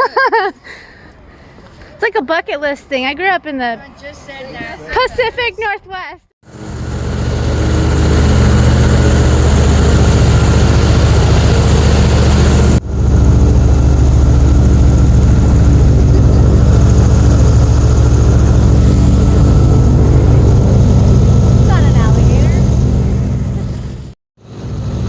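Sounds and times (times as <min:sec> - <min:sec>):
airboat engine and propeller: 0:06.4 - 0:25.0.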